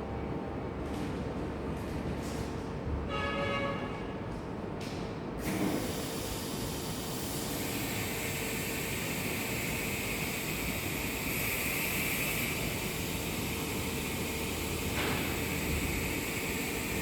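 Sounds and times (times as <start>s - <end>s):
fan rushing hiss: 5.4s - 17.0s.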